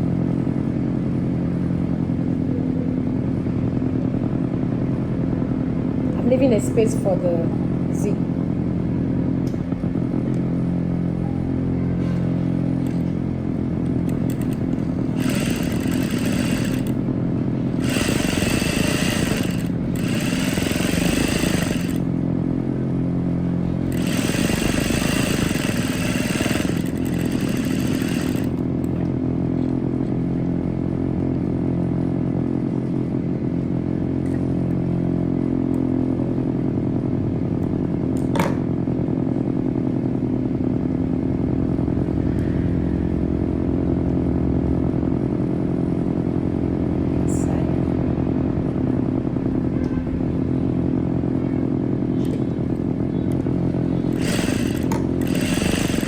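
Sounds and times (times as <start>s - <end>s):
sewing machine motor hum: 12.7s - 29.0s, 53.8s - 56.0s.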